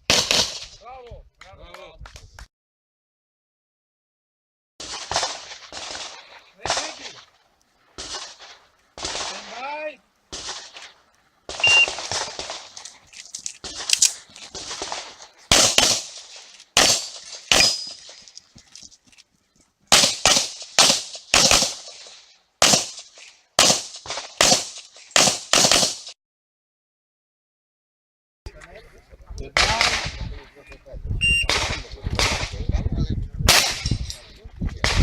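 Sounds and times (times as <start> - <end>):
handgun shots: 13.6 - 16.2, 16.8 - 18.0.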